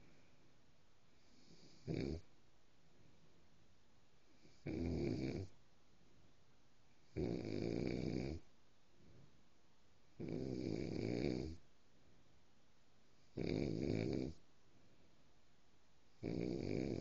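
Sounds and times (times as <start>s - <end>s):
loud snoring: 1.3s - 2.3s, 4.5s - 5.5s, 7.1s - 8.4s, 10.2s - 11.6s, 13.3s - 14.4s, 16.2s - 17.0s.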